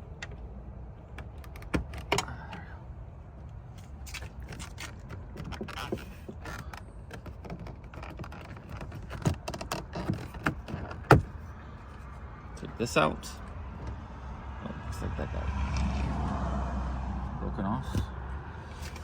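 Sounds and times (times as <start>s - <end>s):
tools and plastic trim rattling: 4.1s - 11.4s.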